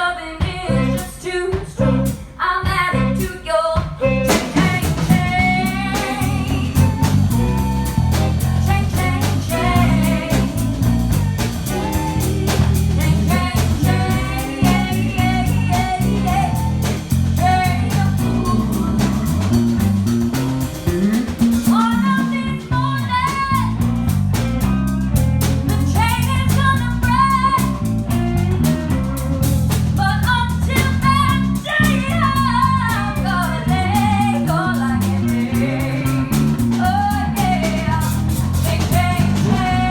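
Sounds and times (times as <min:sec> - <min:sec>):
person singing: 0:00.0 - 0:19.8, 0:30.2 - 0:39.9
guitar: 0:00.0 - 0:39.9
bass line: 0:00.4 - 0:39.9
drum kit: 0:00.4 - 0:39.9.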